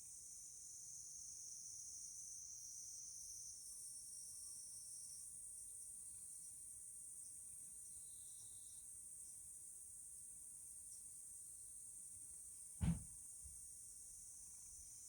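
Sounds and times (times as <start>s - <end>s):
insect chorus: 0.0s - 15.0s.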